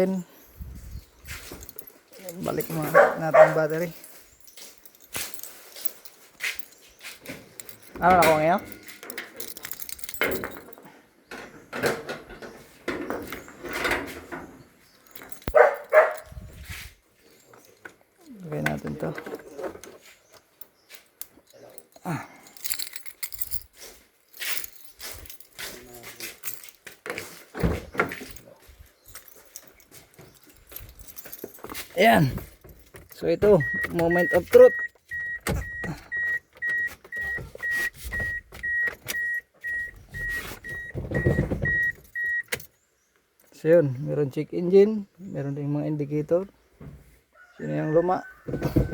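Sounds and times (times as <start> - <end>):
dog barking sharply: 2.9 - 3.6, 15.5 - 16.3
handling noises on car: 11.6 - 16.8, 27.1 - 42.7, 48.4 - 48.9
dashboard warning chime beeping: 33.3 - 42.6.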